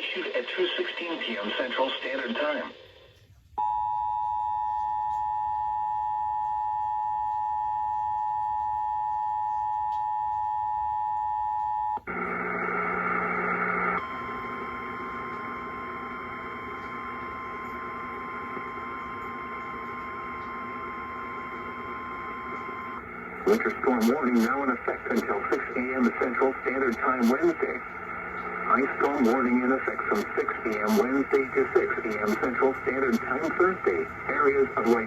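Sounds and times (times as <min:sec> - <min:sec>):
loud radio hiss: 0:00.0 - 0:03.1, 0:12.1 - 0:35.0.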